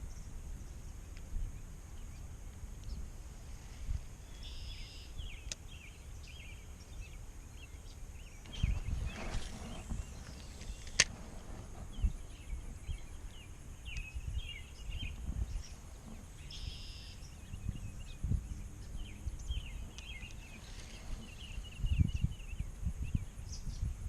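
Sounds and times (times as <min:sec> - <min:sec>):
faint insect drone: 0:00.0 - 0:24.0
small birds chirping: 0:00.0 - 0:24.0
wind buffeting microphone: 0:00.0 - 0:24.0.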